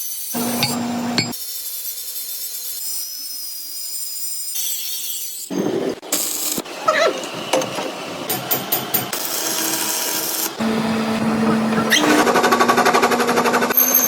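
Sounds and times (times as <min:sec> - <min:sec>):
machine hum: 0:00.4 - 0:01.3
metal tool clicks: 0:00.6 - 0:01.3.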